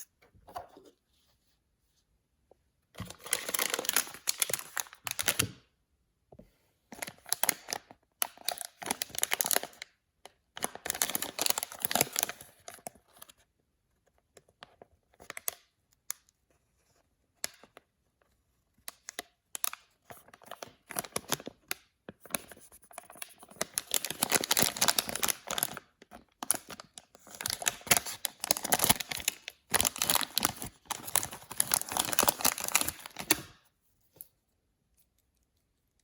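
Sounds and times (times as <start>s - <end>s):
packaging tearing and crinkling: 3.0s - 5.4s, 23.5s - 33.6s.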